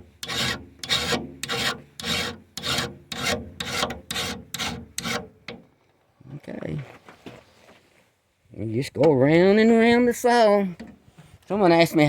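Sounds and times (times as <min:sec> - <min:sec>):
file rasping on saw teeth: 0:00.2 - 0:05.3.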